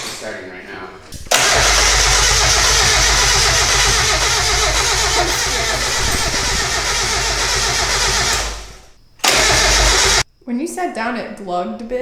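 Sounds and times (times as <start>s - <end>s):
engine cranking on starter motor: 1.2s - 10.2s.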